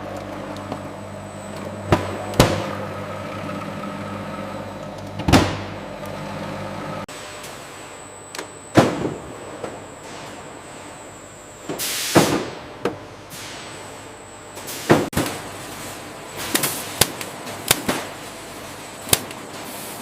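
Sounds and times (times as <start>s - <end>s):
machine hum: 0.0s - 11.8s.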